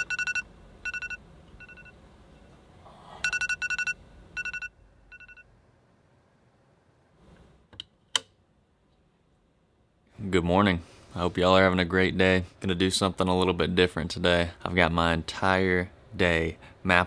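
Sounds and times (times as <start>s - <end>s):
electronic alarm beeping: 0.0s - 2.0s, 3.2s - 5.4s.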